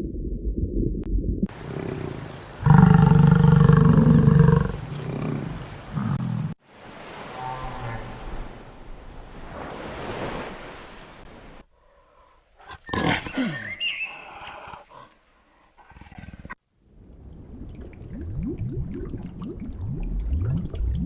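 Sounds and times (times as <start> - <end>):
wild animal roaring: 1.5 - 6.6.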